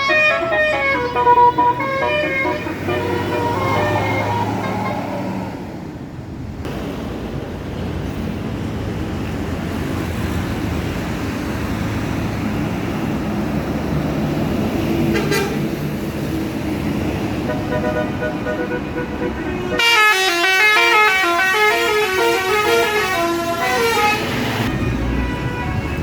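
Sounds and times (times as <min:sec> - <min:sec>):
multi-tone bus horn: 0:00.0 - 0:05.6, 0:15.0 - 0:15.8, 0:17.1 - 0:26.0
bus engine running: 0:00.0 - 0:26.0
road traffic: 0:00.0 - 0:26.0.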